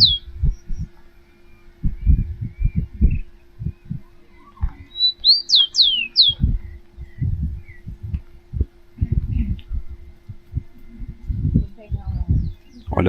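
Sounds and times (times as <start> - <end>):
wind buffeting microphone: 0.0 - 4.9, 6.2 - 13.0
bird calling sharp high notes: 0.0 - 7.9.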